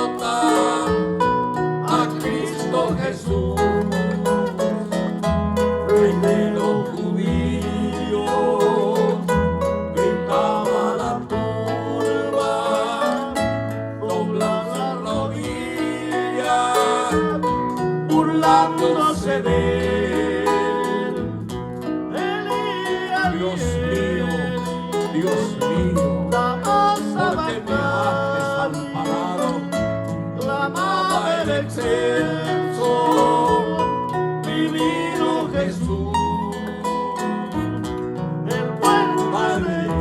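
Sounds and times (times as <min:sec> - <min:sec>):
praise song on guitar: 0:00.0 - 0:40.0
steady bass line: 0:02.8 - 0:12.4, 0:25.6 - 0:26.7.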